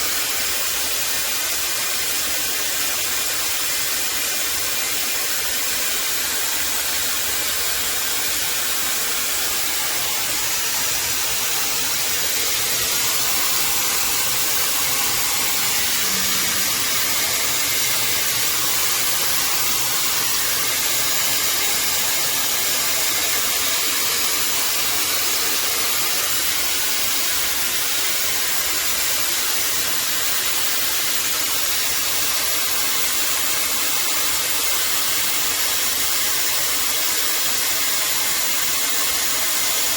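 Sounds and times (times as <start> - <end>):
hair dryer running: 6.3 - 26.3.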